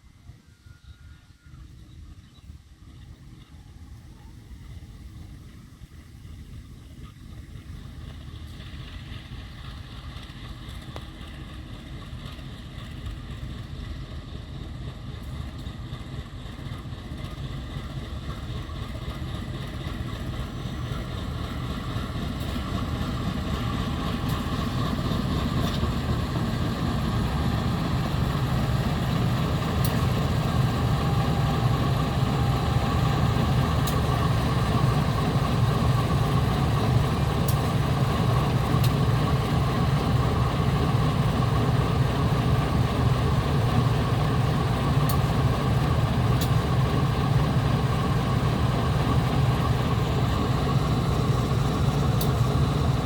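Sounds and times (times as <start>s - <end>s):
diesel locomotive engine rumble: 0.0s - 53.0s.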